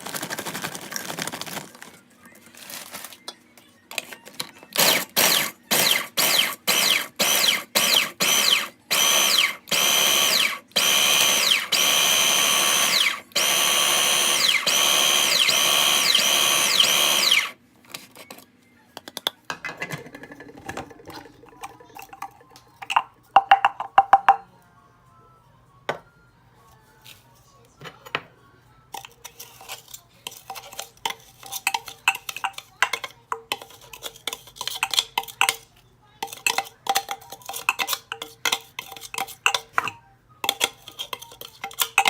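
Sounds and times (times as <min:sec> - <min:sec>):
blender pulsing: 0:04.8 - 0:17.6.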